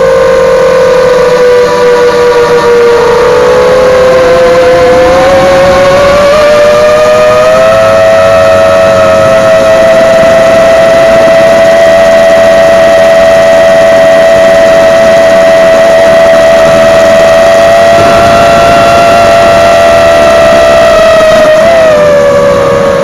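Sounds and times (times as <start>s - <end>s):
quadcopter motors whining: 0.0s - 23.0s.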